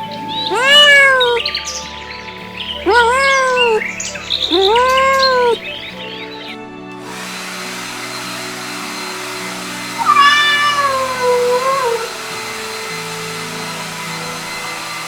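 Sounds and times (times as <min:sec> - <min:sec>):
soft background music: 0:00.0 - 0:15.0
cat meowing: 0:00.5 - 0:01.6, 0:02.8 - 0:03.9, 0:04.5 - 0:05.7, 0:10.0 - 0:12.2.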